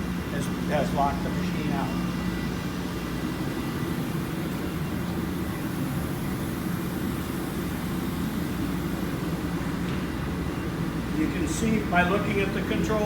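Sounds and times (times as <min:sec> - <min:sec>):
low machinery drone: 0:00.0 - 0:13.0.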